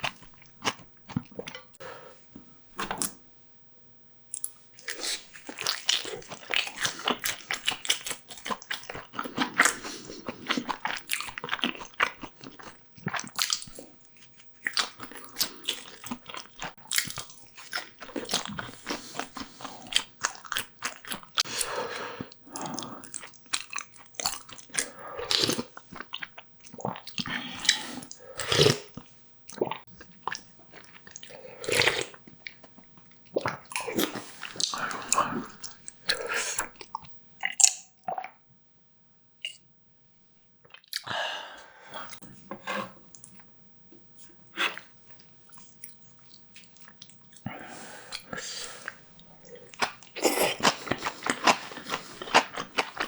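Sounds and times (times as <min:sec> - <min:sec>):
person chewing crunchy food: 0:00.0 - 0:01.8, 0:04.3 - 0:38.4, 0:44.2 - 0:53.0.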